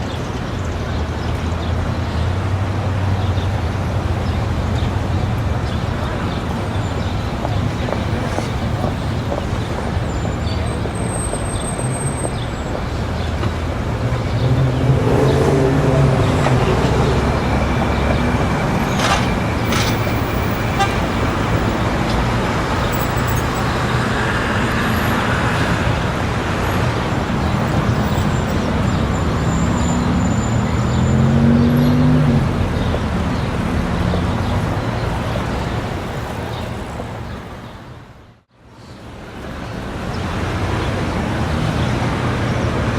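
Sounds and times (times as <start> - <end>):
street traffic: 0.0 - 42.9
murmur of crowd voices: 5.1 - 22.0
loud engine passing: 13.6 - 34.7.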